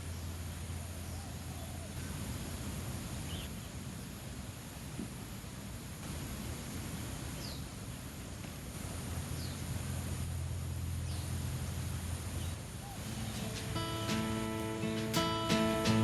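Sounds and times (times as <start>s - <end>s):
background hiss: 0.0s - 16.0s
low hum: 9.0s - 16.0s
faint bird chirps: 11.0s - 16.0s
acoustic guitar music: 13.0s - 16.0s.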